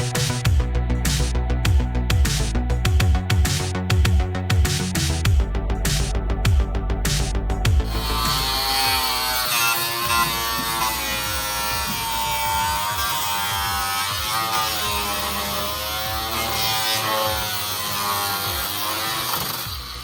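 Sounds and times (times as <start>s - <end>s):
power tool motor buzzing: 7.8s - 20.0s.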